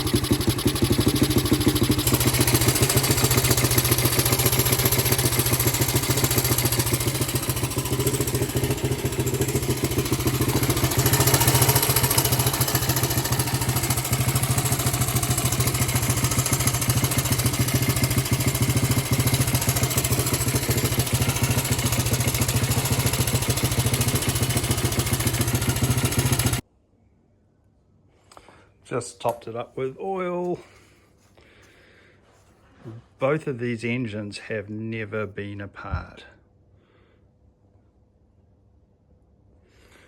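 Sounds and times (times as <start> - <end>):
motorcycle engine idling: 0.0 - 26.6.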